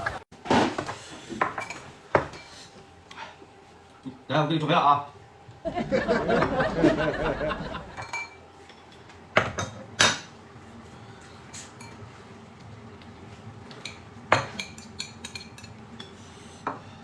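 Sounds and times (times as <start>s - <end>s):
dishes and utensils clinking: 1.4s - 2.7s, 7.9s - 10.3s, 11.5s - 12.1s, 13.7s - 16.9s.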